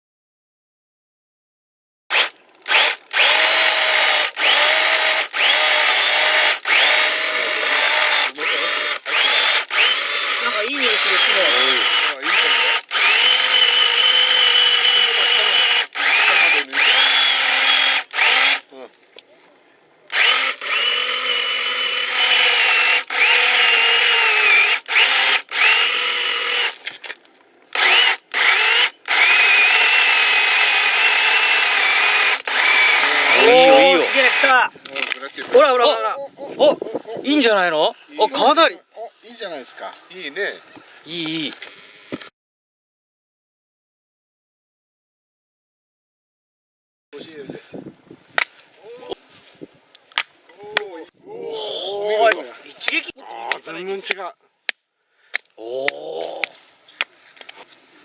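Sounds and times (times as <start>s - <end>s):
small electric motor whining: 2.1s - 18.7s, 20.1s - 26.9s, 27.7s - 35.6s.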